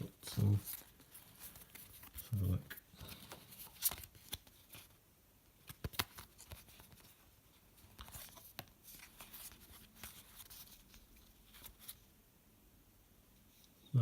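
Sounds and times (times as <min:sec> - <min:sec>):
cards clicking and rustling: 0:00.0 - 0:05.0, 0:05.6 - 0:07.2, 0:07.8 - 0:12.0
cards snapping: 0:05.6 - 0:07.0.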